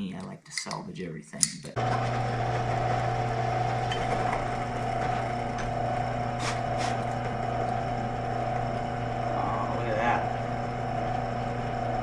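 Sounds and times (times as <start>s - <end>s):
electric power tool motor running: 1.8s - 12.0s.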